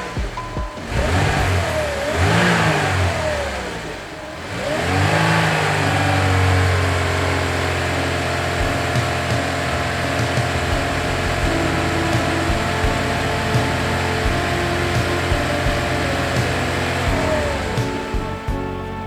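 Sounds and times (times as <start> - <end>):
vehicle engine revving: 0.0 - 19.0.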